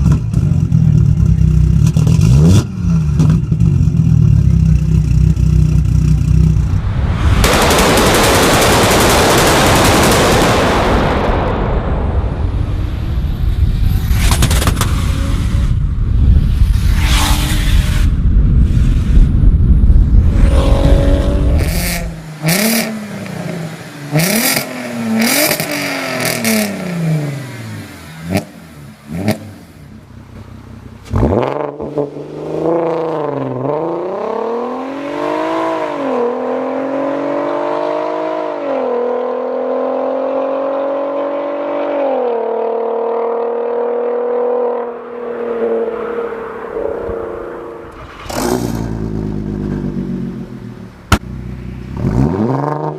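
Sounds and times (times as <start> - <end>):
exhaust cracks: 13.8 - 22.2, 46.7 - 52.2
car engine revving: 20.0 - 52.9.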